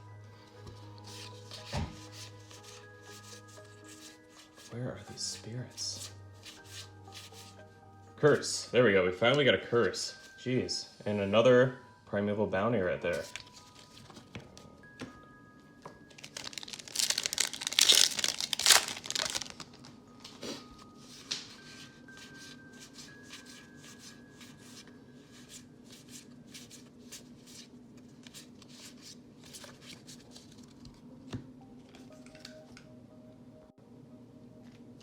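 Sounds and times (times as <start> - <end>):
foil wrapper crinkling and tearing: 16.1 - 20.0.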